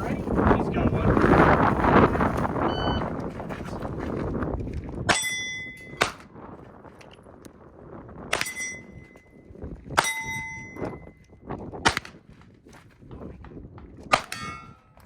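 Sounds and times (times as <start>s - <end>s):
steel plate targets ringing: 5.1s - 6.2s, 8.3s - 9.2s, 10.0s - 11.1s, 14.2s - 15.0s
pistol shots: 5.1s - 6.3s, 11.8s - 12.2s, 14.1s - 14.8s.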